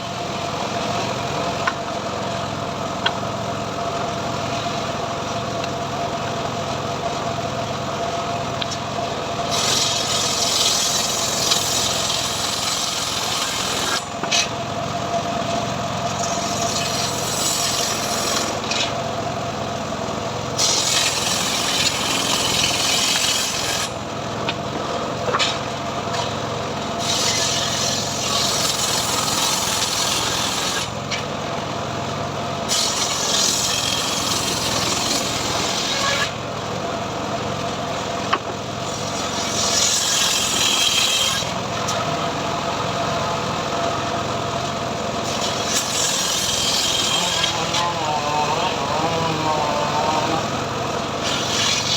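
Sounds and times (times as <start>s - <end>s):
sawmill engine running: 0.0s - 51.9s
saw blade rasping through wood: 9.4s - 14.6s, 16.0s - 19.0s, 20.5s - 24.1s, 27.0s - 31.3s, 32.7s - 36.4s, 38.8s - 42.1s, 45.2s - 51.9s.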